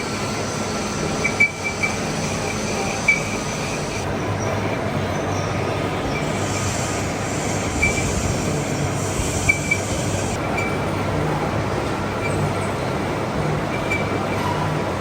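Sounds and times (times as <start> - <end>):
metal-cutting machinery running: 0.0 - 15.0
high hiss: 6.2 - 10.4.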